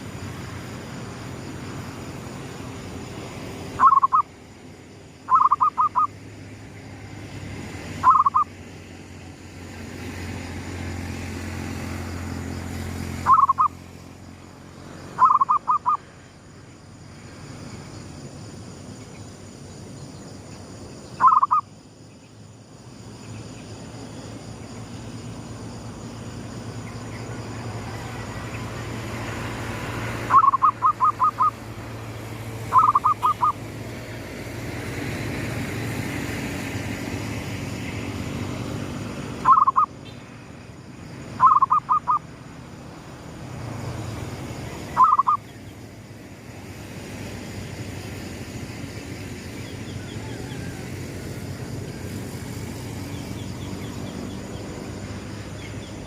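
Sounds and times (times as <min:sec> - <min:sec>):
dove cooing in staccato bursts: 0:03.8 - 0:04.2, 0:05.3 - 0:06.2, 0:08.0 - 0:08.6, 0:15.2 - 0:16.0, 0:30.2 - 0:31.6, 0:32.7 - 0:33.6, 0:41.4 - 0:42.2, 0:45.0 - 0:45.4.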